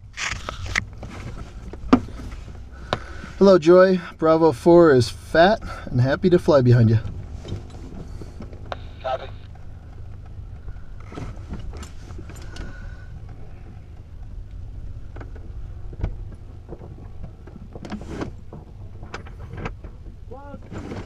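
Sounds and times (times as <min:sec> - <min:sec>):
steady low rumble: 0:00.0 - 0:20.6
airframe knocks clicks and creaks: 0:09.5 - 0:21.0.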